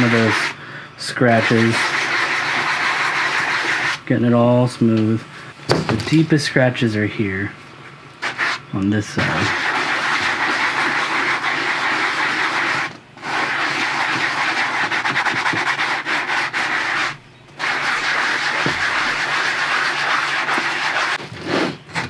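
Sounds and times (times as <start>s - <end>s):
sanding block scraping leather: 0.0s - 0.6s, 1.2s - 4.0s, 9.2s - 22.0s.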